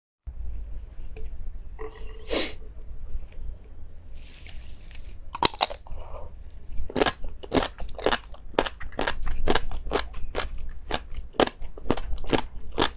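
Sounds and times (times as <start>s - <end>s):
chewing crunchy food: 5.4s - 12.9s.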